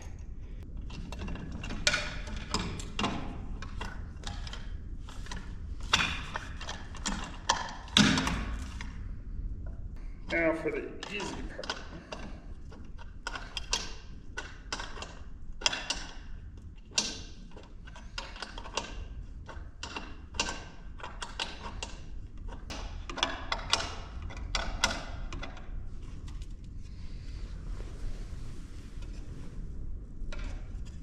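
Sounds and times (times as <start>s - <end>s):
low rumble: 25.8s - 31.0s.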